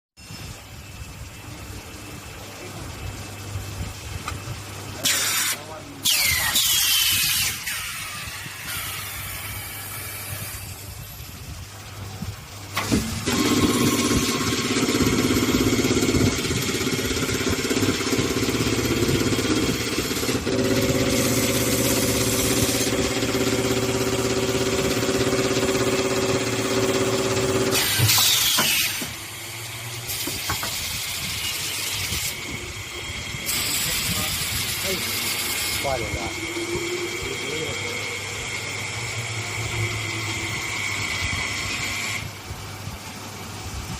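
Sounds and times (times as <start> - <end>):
air hiss with falling whistle: 5.3 - 7.4
welding machine humming buzz: 12.8 - 42.4.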